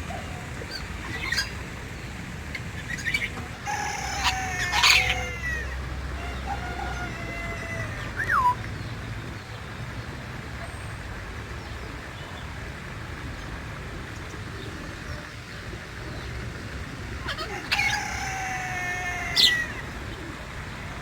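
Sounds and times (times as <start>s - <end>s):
faint bird calls: 2.5s - 8.7s.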